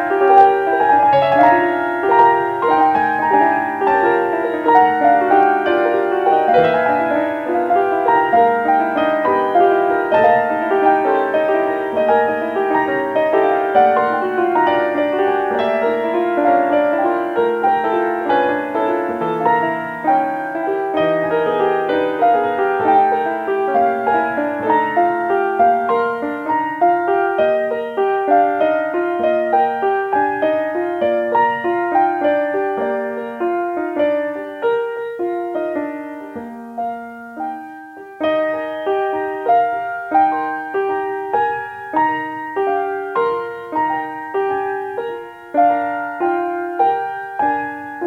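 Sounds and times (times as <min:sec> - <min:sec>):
piano music: 0:00.0 - 0:48.0.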